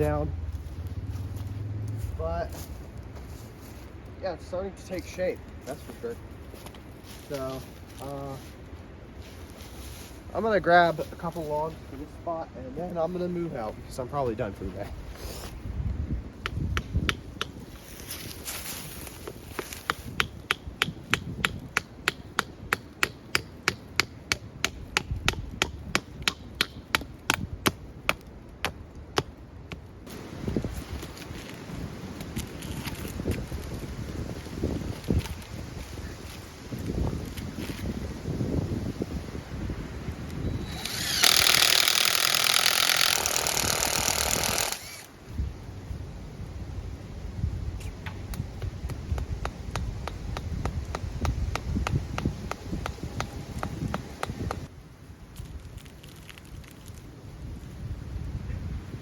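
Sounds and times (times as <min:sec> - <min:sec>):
tool striking wood: 0:16.4 - 0:17.6, 0:19.6 - 0:29.8, 0:40.8 - 0:45.1, 0:49.1 - 0:54.6
power tool running: 0:40.7 - 0:45.1.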